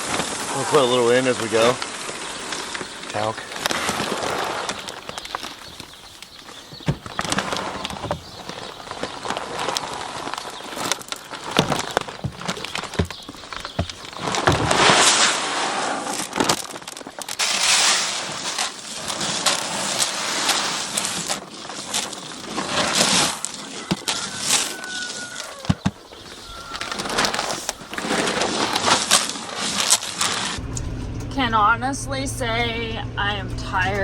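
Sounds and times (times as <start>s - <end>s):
seed corn rattling and pouring: 0.0s - 30.6s
scattered clicks and knocks: 10.8s - 14.8s.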